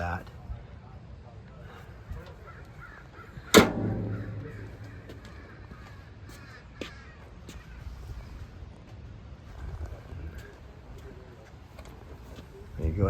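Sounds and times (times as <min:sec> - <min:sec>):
metal cover banging shut: 0:03.5 - 0:05.6.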